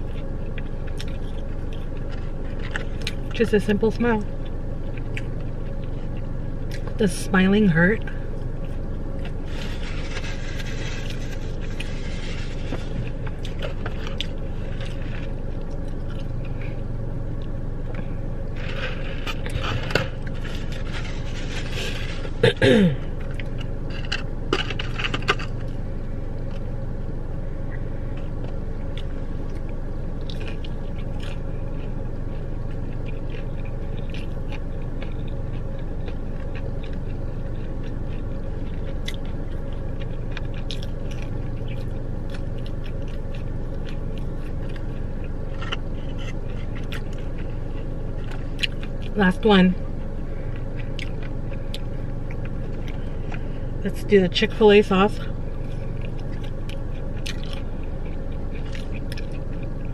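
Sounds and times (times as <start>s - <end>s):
chewing: 0.0s - 7.0s, 8.0s - 25.8s, 27.7s - 49.2s, 49.9s - 53.7s, 55.1s - 59.9s
steady low hum: 0.0s - 59.9s
scraping and rustling: 9.3s - 15.4s, 18.5s - 22.5s.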